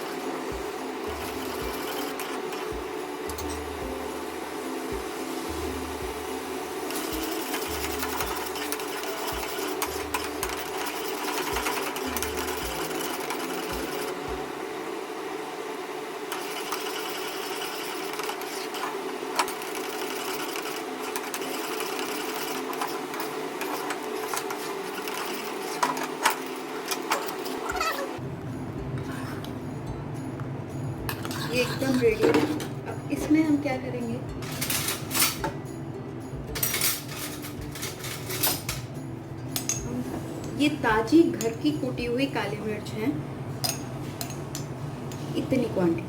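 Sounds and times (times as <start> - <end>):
machine whirring: 0.0 - 3.9, 4.7 - 28.3.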